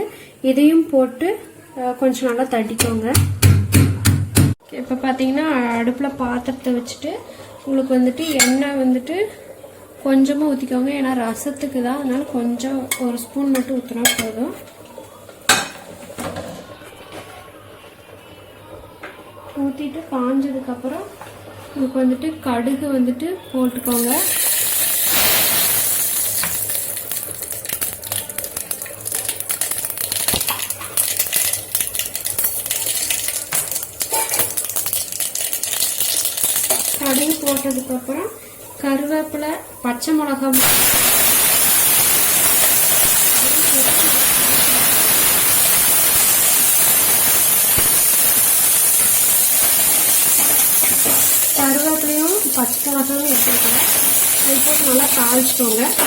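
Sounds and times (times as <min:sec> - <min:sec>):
seeds sizzling and popping in oil: 0:23.7 - 0:38.0, 0:40.5 - 0:56.0.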